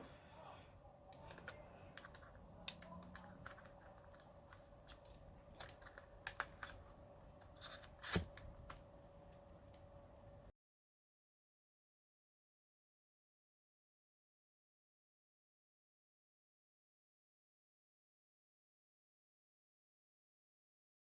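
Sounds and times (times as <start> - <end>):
faint steady hum: 0.0 - 10.5
small parts clicking and tapping: 1.1 - 8.0.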